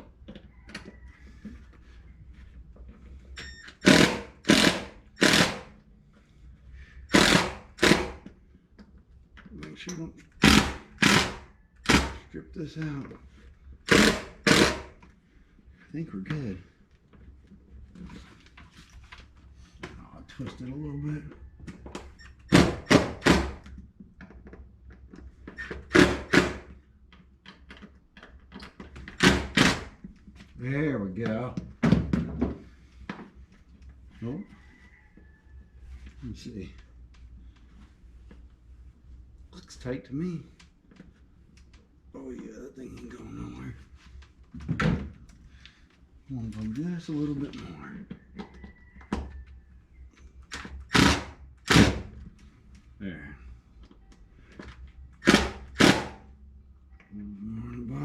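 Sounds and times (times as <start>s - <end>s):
power drill driving screws: 3.6s - 5.8s, 7.1s - 8.2s, 10.4s - 12.2s, 13.9s - 15.0s, 25.6s - 26.7s, 29.2s - 30.0s, 50.8s - 52.1s, 55.2s - 56.2s
faint clicks and handling noises: 8.3s - 10.4s, 15.0s - 22.2s, 40.5s - 43.2s.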